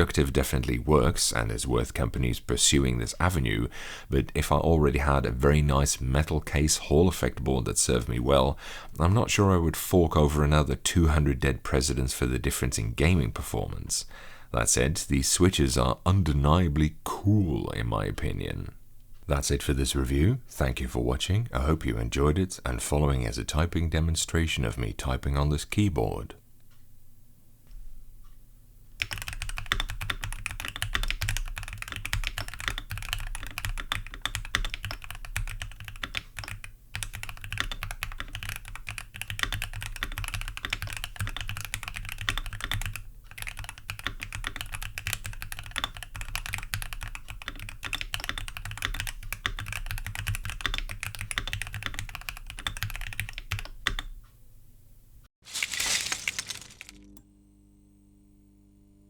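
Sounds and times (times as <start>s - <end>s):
fast keyboard typing: 29.0s - 54.1s.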